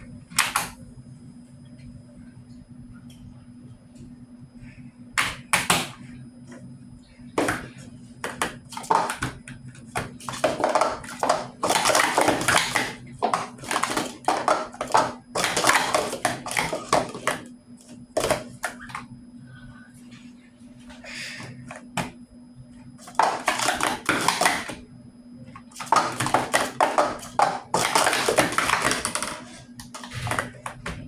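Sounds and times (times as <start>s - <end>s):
steady low hum: 0.0s - 31.0s
small hard objects clattering: 10.2s - 17.4s, 25.7s - 30.8s.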